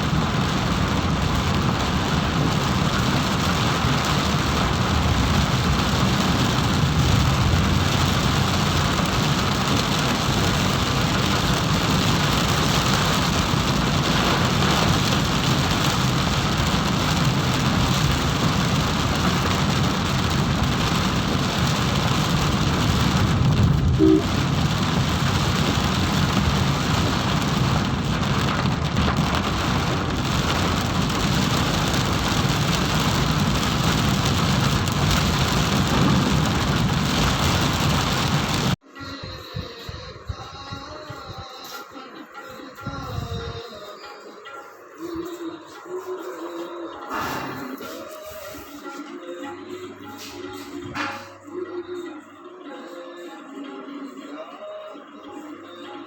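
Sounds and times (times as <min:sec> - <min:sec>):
heavy rain: 0:00.0 - 0:38.8.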